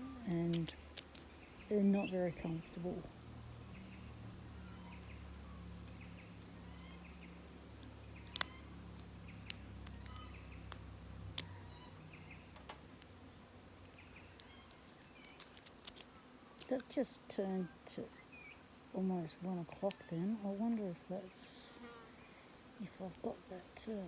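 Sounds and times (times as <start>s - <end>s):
faint bird chirps: 0.0s - 7.4s, 8.0s - 10.8s, 11.4s - 12.6s, 13.8s - 15.4s, 17.4s - 18.9s
low steady hum: 0.0s - 24.0s
lock picks clicking: 0.4s - 1.3s, 7.8s - 11.5s, 14.2s - 16.8s.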